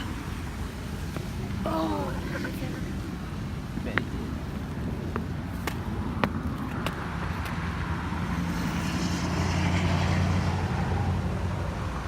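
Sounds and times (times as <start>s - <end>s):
vehicle engine hum passing: 4.9s - 12.0s.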